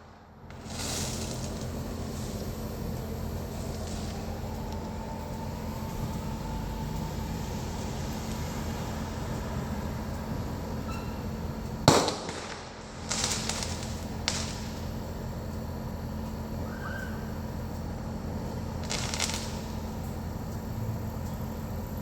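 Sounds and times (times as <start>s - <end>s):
firework crackling: 0.0s - 15.4s, 18.4s - 20.4s
low background hum: 0.0s - 22.0s
firework shells booming: 0.5s - 4.6s, 11.8s - 14.9s, 18.8s - 19.7s.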